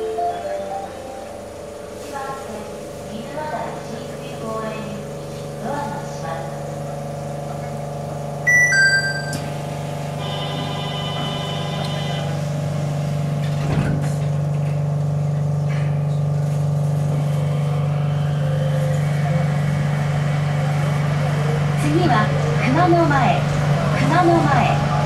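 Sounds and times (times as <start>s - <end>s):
electric train humming and whining: 0.0s - 25.0s
two-note falling door chime: 8.5s - 9.5s.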